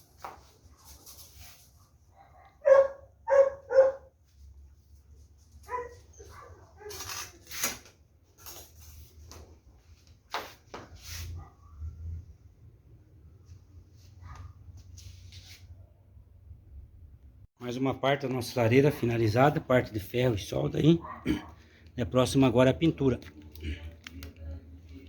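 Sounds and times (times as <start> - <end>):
dog barking: 2.2 - 4.1, 5.6 - 7.0, 14.2 - 14.6, 21.0 - 21.7.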